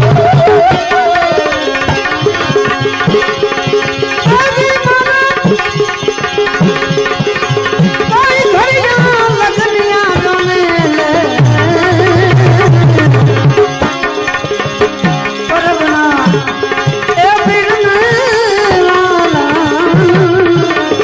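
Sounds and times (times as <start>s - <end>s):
steady held notes: 0.0s - 21.0s
tabla fast rhythm: 0.0s - 21.0s
wavering melody line: 6.5s - 20.9s.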